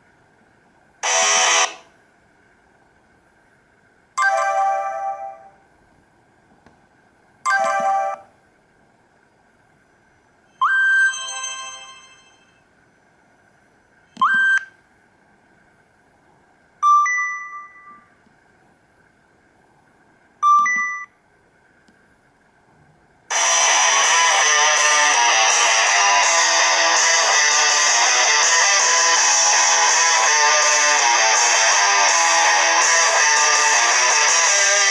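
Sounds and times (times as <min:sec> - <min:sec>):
electronic phone chimes and bleeps: 0:10.5 - 0:12.6, 0:14.1 - 0:14.7.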